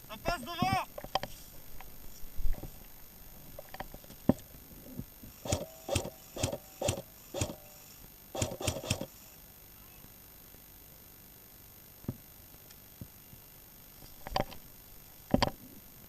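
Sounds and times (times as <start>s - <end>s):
airsoft gun shots: 5.4s - 7.6s, 8.4s - 9.1s.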